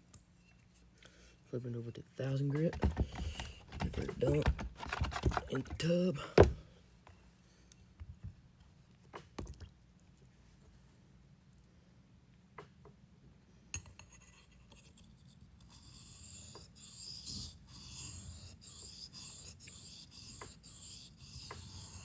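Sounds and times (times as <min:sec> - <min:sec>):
knock: 0:02.7 - 0:05.4
knife scraping on whetstone: 0:14.1 - 0:22.0.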